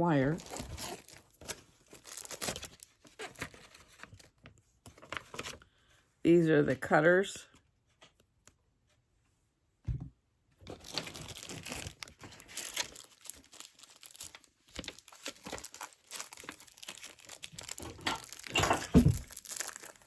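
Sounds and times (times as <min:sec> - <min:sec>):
plastic wrapping crinkling and tearing: 0:00.2 - 0:04.4, 0:10.7 - 0:20.0.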